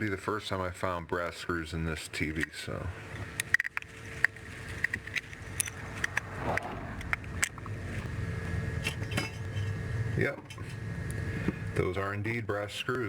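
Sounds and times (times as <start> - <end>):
faint steady hum: 0.0 - 13.0
screws and metal parts clicking: 3.4 - 6.2.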